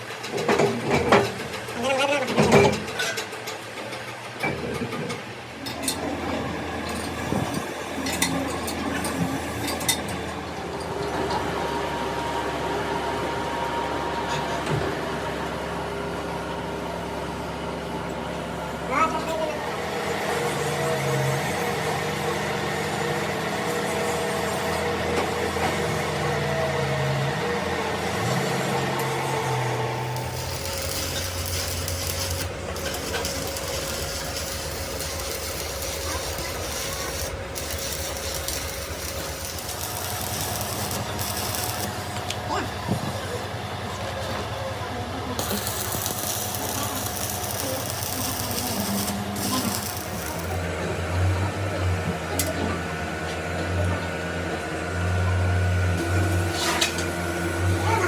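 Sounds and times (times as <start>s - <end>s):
machine motor humming: 19.6s - 58.0s.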